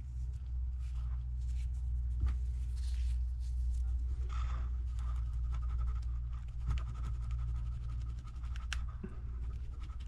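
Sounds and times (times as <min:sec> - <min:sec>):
steady low hum: 0:00.0 - 0:10.0
light scratching on a screen: 0:03.1 - 0:10.0.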